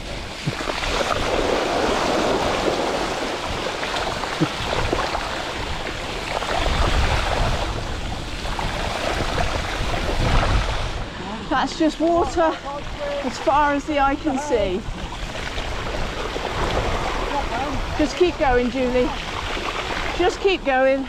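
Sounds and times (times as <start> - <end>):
bike tyres splashing through water: 0.0 - 11.0
wind buffeting microphone: 0.0 - 21.0.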